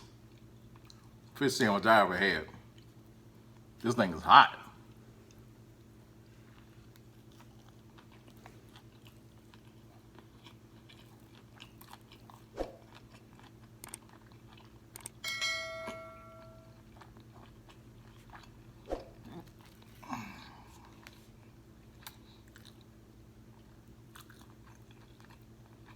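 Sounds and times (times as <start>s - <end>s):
crunchy chewing: 4.9s - 15.2s, 16.6s - 20.0s, 20.7s - 25.9s
brief ringing tone: 15.2s - 16.7s.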